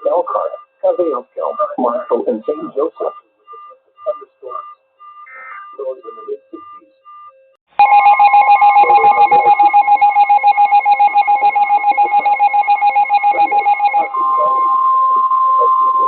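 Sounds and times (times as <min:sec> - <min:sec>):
weather radio alert alarm: 0:00.0 - 0:16.0.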